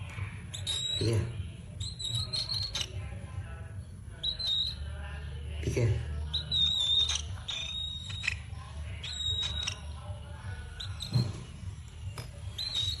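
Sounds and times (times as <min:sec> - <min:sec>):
parrot whistling: 0:00.4 - 0:03.0, 0:04.2 - 0:04.8, 0:06.3 - 0:10.0, 0:10.6 - 0:11.6, 0:12.4 - 0:13.0.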